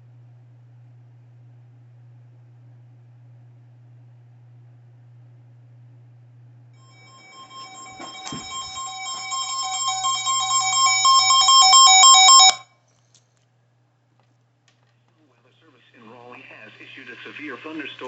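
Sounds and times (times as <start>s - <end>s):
rapid electronic beeping: 7.0s - 12.6s.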